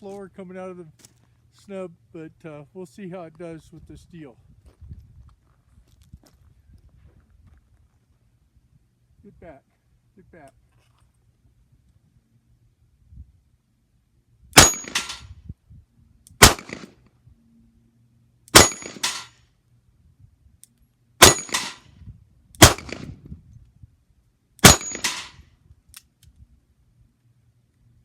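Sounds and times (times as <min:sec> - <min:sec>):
revolver gunshots: 0:14.6 - 0:15.2, 0:16.4 - 0:17.0, 0:18.5 - 0:19.3, 0:21.2 - 0:21.8, 0:22.6 - 0:23.2, 0:24.6 - 0:25.3
bullet hitting steel plate: 0:14.6 - 0:15.3, 0:18.5 - 0:19.3, 0:21.2 - 0:21.8, 0:24.6 - 0:25.4.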